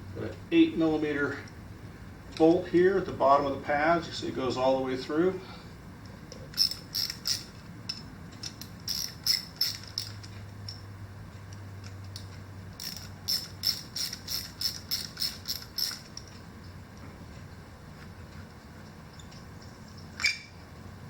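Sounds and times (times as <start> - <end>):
ratchet wrench clicking: 6.3 - 10.8, 11.5 - 16.4.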